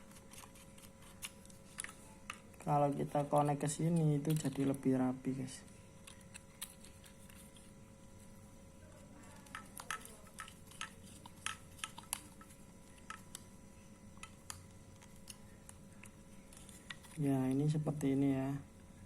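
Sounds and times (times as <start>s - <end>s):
clicks of handled electrical wires: 3.9s - 4.8s.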